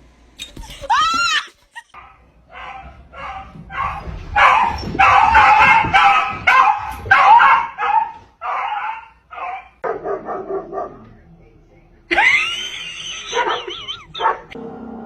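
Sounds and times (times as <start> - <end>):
dog barking and yipping: 0.9 - 11.0, 13.3 - 14.6.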